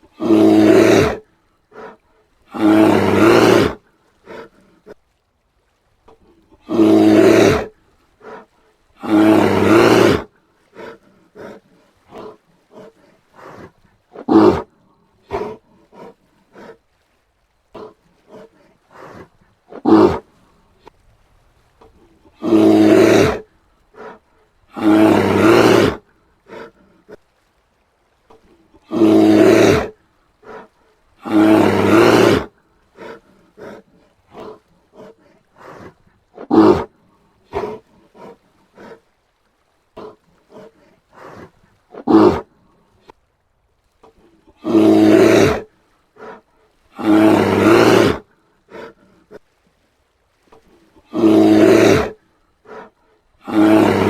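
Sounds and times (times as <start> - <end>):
bear roaring: 0.0 - 5.0, 6.5 - 16.8, 17.7 - 20.3, 22.0 - 27.2, 28.4 - 36.9, 37.5 - 39.0, 40.0 - 42.7, 44.2 - 49.4, 51.0 - 54.0
bear grunts and huffs: 0.0 - 5.2, 6.1 - 21.0, 21.8 - 27.6, 28.3 - 43.2, 44.0 - 49.6, 50.5 - 54.0.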